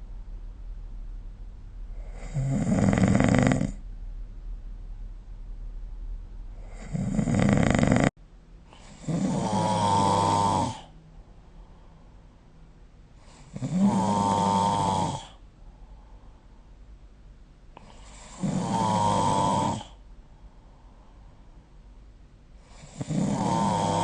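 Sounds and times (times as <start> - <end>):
person snoring: 2.0 - 3.8, 6.6 - 8.1, 8.7 - 11.0, 13.3 - 15.4, 17.8 - 20.0, 22.6 - 24.0.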